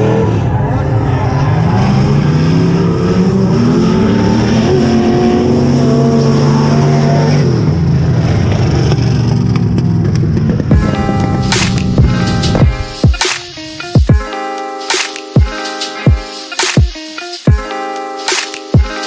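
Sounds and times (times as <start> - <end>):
car engine revving: 0.0 - 14.5.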